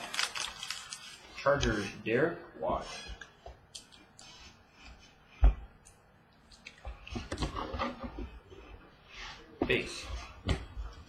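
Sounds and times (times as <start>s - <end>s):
trading cards and wrappers rustling: 0.0s - 1.4s.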